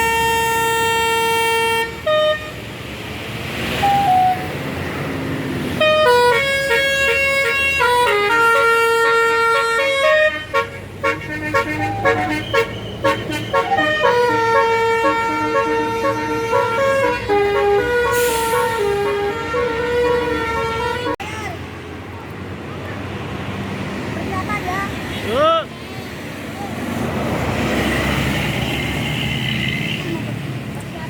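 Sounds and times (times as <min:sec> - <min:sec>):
bus horn playing a tune: 0:00.0 - 0:02.7, 0:03.7 - 0:04.6, 0:05.7 - 0:21.2.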